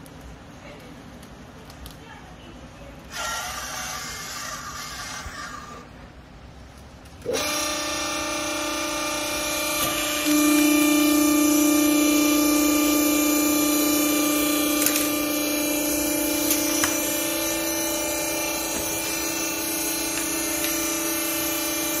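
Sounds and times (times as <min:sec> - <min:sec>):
hydraulic pump motor humming: 0:07.2 - 0:22.0.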